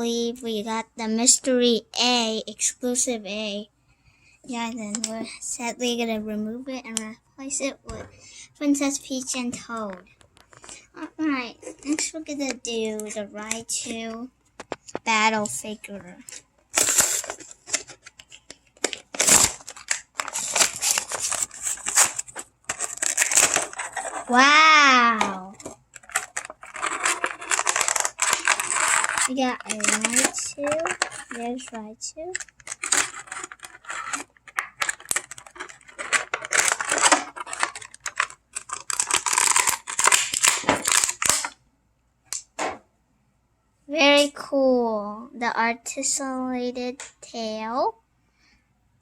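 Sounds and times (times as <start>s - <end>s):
plastic and card crinkling: 4.8s - 5.4s, 9.1s - 41.6s
packaging ripping: 16.7s - 41.6s.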